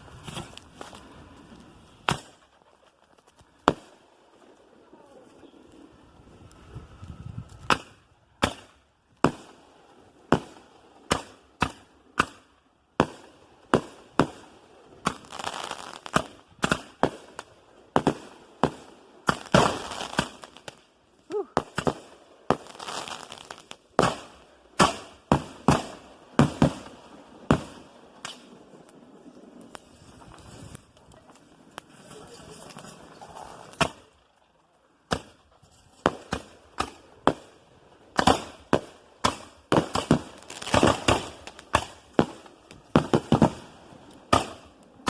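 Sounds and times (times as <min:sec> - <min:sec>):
firework bangs: 0:00.0 - 0:02.8, 0:06.3 - 0:20.8, 0:21.5 - 0:30.8, 0:36.0 - 0:44.8
firework crackle: 0:00.0 - 0:34.4, 0:35.0 - 0:45.0.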